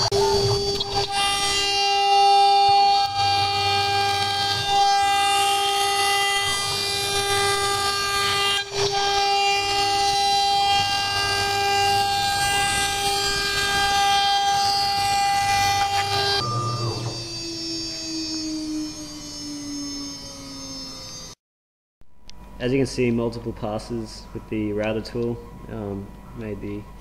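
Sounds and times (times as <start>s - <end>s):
motors whirring: 0.0s - 21.4s
router spindle whine: 0.0s - 21.4s.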